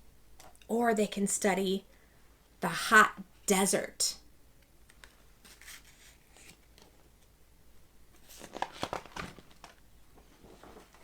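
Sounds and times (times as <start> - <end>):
paper rustling and crinkling: 4.9 - 7.1, 8.2 - 11.0.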